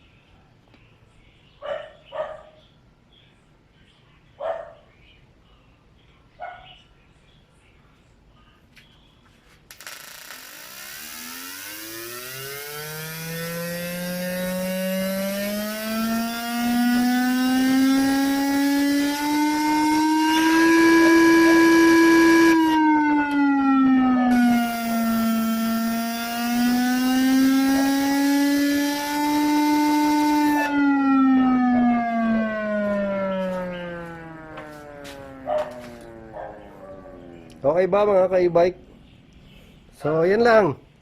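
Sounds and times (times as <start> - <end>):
buzzy synthetic engine tone: 9.8 - 38.4.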